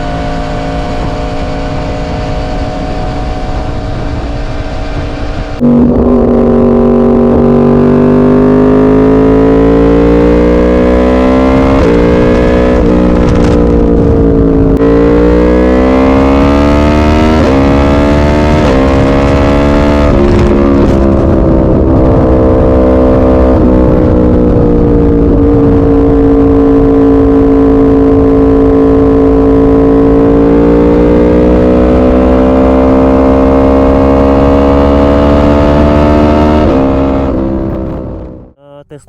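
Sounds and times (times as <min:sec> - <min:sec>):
motorcycle engine revving: 0:00.0 - 0:38.6
gear changes: 0:00.4 - 0:15.5.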